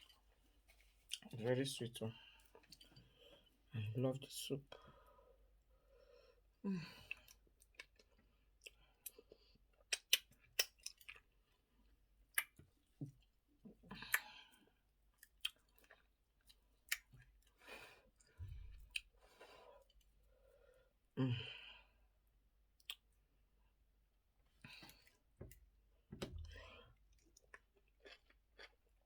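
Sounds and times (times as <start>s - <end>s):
wet mouth clicks and chewing: 7.1s - 11.4s, 12.3s - 12.6s, 14.0s - 14.4s, 15.1s - 17.5s, 22.8s - 23.2s, 27.1s - 28.8s.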